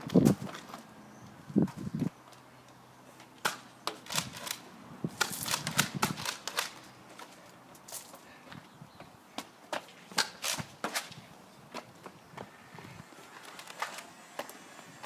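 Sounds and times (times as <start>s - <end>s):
toy blasters clacking and popping: 5.2s - 6.8s.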